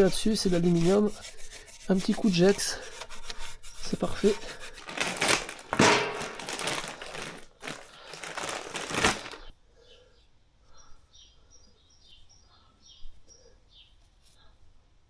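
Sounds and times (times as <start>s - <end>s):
scouring pad scrubbing metal: 0.0s - 6.4s
faint bird chirps: 9.8s - 14.6s.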